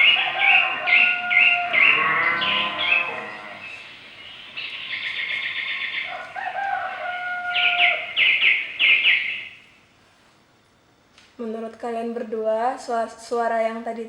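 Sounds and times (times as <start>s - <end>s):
rooster crowing: 0.0s - 8.4s
small birds chirping: 0.0s - 9.8s.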